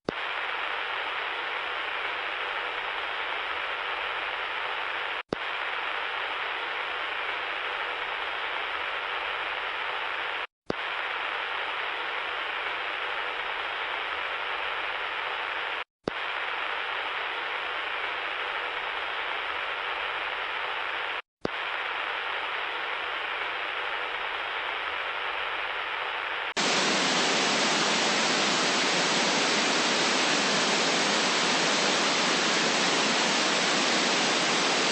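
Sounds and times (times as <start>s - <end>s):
electronic static hiss: 26.6s - 34.9s.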